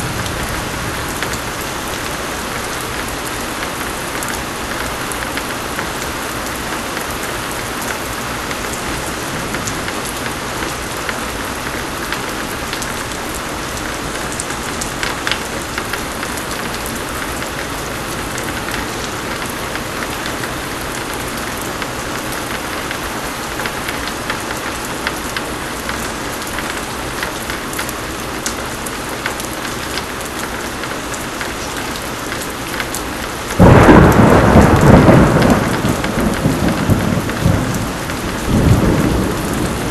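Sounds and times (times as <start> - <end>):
heavy rain pouring: 0.0 - 39.9
thunder clap: 33.6 - 39.9.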